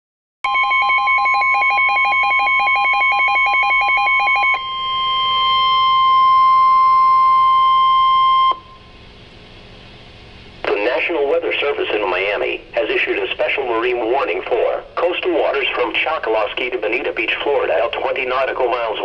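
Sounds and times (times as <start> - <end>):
rapid pulsing beep: 0.5 - 8.8.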